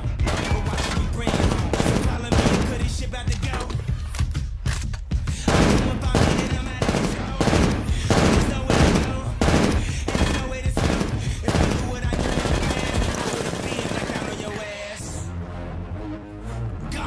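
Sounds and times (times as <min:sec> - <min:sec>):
rapid gunfire: 0:00.0 - 0:03.3, 0:05.3 - 0:15.0
music: 0:00.0 - 0:17.0.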